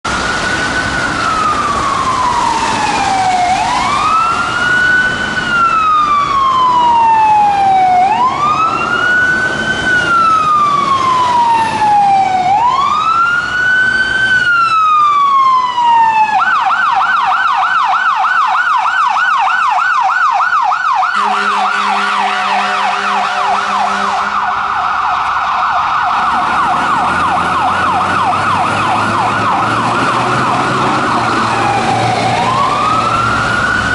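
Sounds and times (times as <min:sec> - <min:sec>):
siren wailing and yelping: 0:00.2 - 0:33.9
low air horn blasts: 0:21.1 - 0:24.5.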